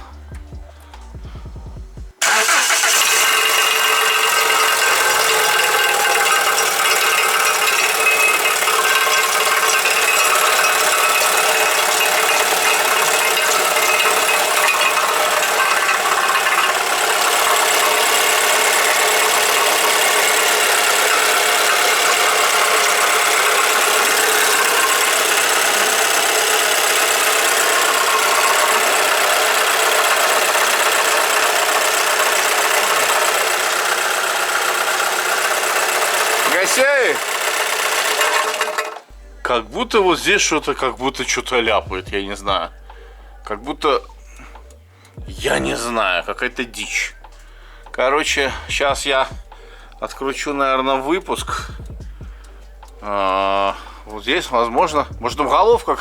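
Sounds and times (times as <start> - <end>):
car engine idling: 0.0 - 56.0
knocking rattle: 1.2 - 39.2, 50.2 - 56.0.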